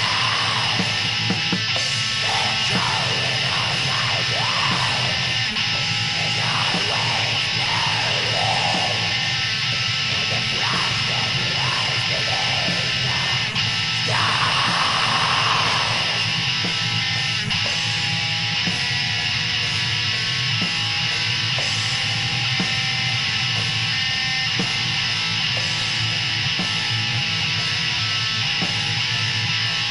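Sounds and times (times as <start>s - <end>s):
harsh shrieked vocals: 0.0s - 16.7s
distorted electric guitar: 0.0s - 29.9s.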